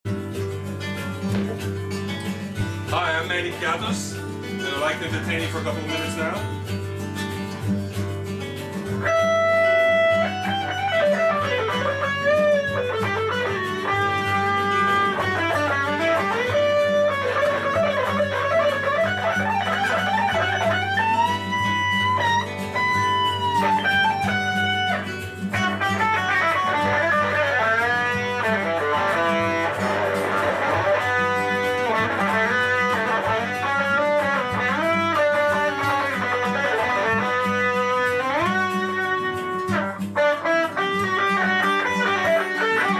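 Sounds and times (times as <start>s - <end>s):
guitar solo: 0.0s - 42.9s
low backing music: 0.1s - 42.9s.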